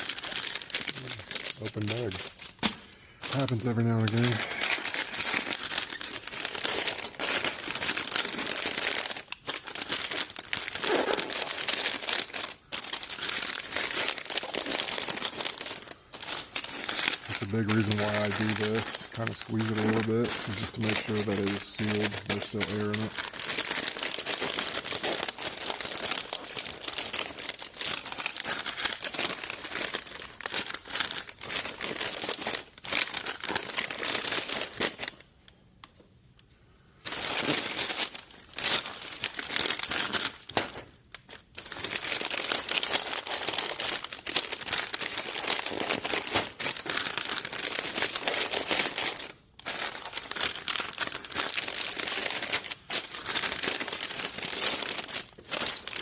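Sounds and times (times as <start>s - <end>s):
chip bags crinkling: 0.0s - 35.3s, 37.0s - 56.0s.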